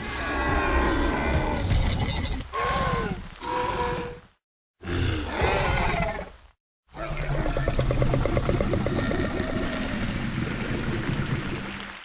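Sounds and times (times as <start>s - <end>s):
low rattling dinosaur growl: 7.2s - 11.8s.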